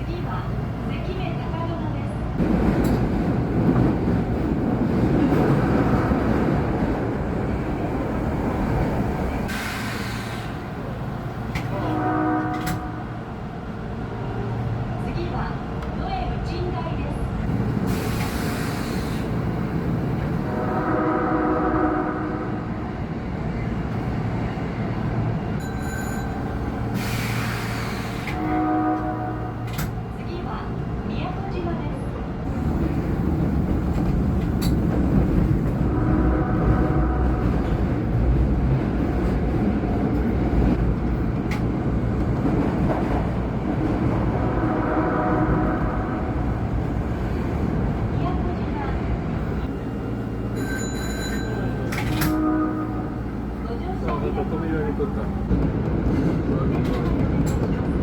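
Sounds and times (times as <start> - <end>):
subway train rumbling: 0.0 - 58.0
train electric horn blast: 11.8 - 13.2, 20.4 - 22.7, 28.2 - 29.8, 35.9 - 37.6, 44.4 - 46.4, 52.1 - 53.4.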